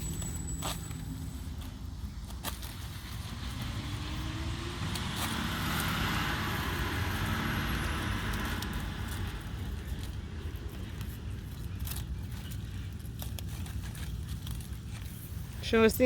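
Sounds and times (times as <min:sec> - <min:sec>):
vehicle passing by: 0:02.6 - 0:12.5.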